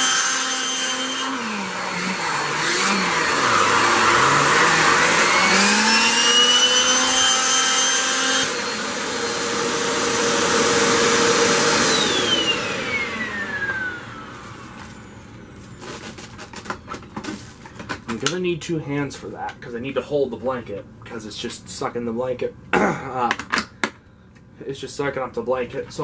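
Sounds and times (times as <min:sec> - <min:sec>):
upright vacuum whining: 0:00.0 - 0:18.1.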